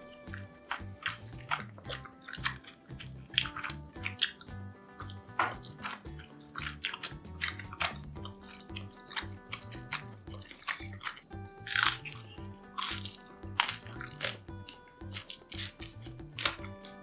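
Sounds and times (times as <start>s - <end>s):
background music with bass line: 0.0s - 17.0s
sharp crisp clicks: 0.0s - 17.0s.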